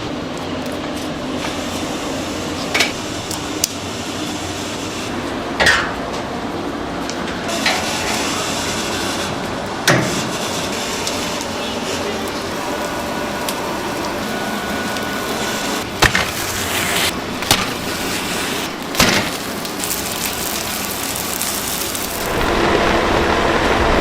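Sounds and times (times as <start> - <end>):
steady rushing background: 22.0 - 24.0.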